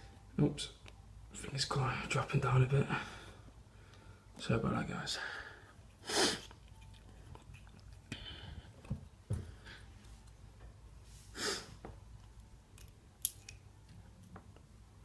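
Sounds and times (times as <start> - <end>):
person breathing: 2.8 - 4.4, 5.1 - 6.5, 8.0 - 10.1, 11.1 - 11.8.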